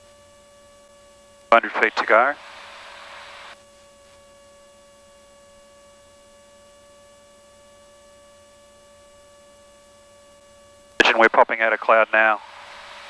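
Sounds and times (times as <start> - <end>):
electrical hum with whining tones: 1.5 - 8.1, 10.4 - 13.0.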